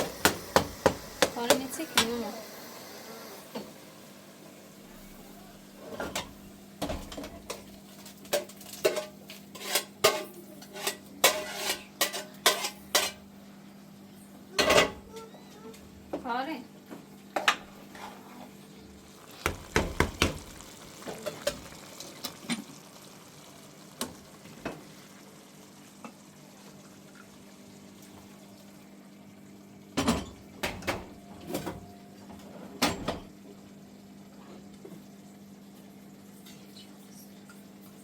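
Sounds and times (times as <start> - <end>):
dishes and cutlery clattering: 8.3 - 13.2, 14.6 - 15.0.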